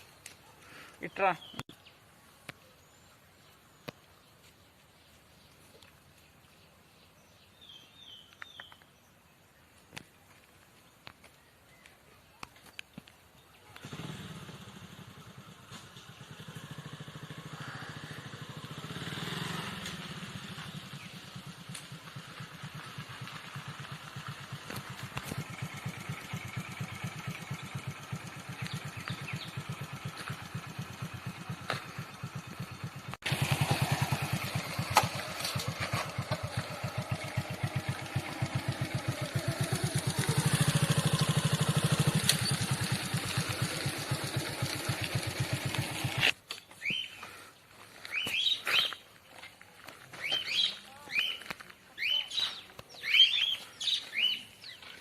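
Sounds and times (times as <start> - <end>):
vehicle engine pulsing: 13.7 - 46.4.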